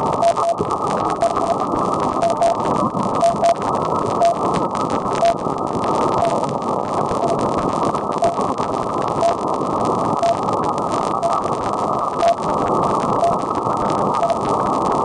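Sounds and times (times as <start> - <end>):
radio static hiss: 0.0 - 15.0
short time-signal beeps: 0.2 - 0.6, 1.2 - 1.6, 2.2 - 2.6, 3.2 - 3.6, 5.2 - 5.4, 9.2 - 9.4, 10.2 - 10.4, 11.2 - 11.4, 12.2 - 12.4, 14.2 - 14.4.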